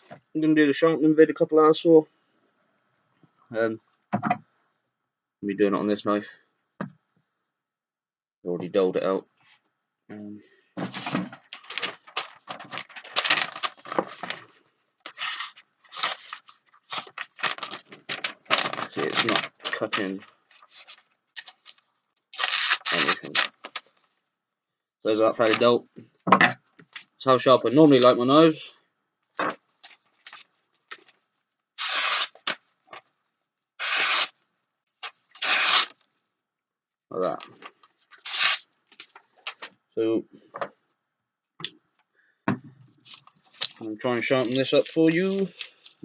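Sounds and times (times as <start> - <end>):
dull knife tearing material: 33.8 - 34.3, 35.0 - 35.9, 38.2 - 38.6.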